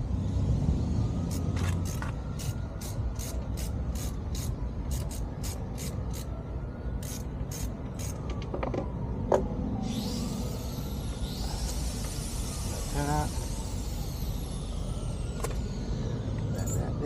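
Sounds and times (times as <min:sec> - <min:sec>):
hiss: 0:09.9 - 0:14.9.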